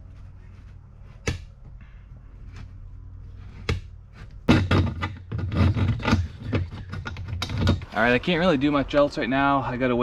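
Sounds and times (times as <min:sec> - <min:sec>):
low steady hum: 0:00.0 - 0:10.0
hard objects clattering: 0:03.6 - 0:07.9.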